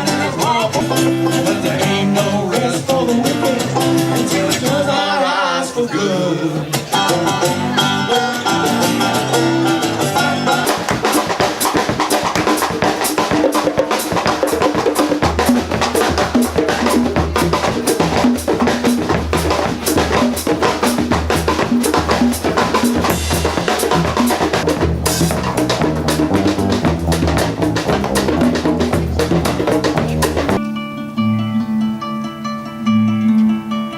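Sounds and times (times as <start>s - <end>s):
drum kit beat: 0.0s - 5.1s, 6.6s - 30.6s
deep bass line: 15.5s - 30.6s.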